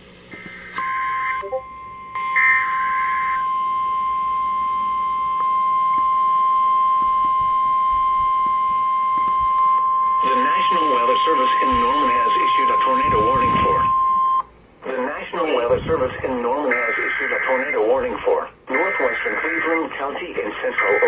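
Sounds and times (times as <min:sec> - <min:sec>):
steady warning alarm tone: 0:00.3 - 0:19.8
screechy digital header bursts: 0:10.2 - 0:14.2, 0:15.4 - 0:19.3.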